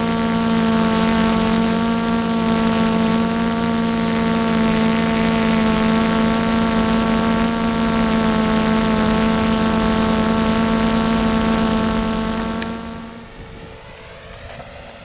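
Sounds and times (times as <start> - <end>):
drone motors and propellers droning: 0.0 - 15.0
thin high whine: 0.0 - 15.0.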